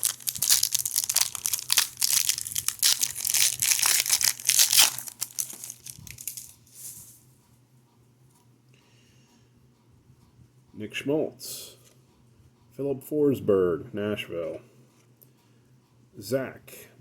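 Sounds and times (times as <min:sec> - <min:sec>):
wrapper crinkling and tearing: 0:00.0 - 0:06.6.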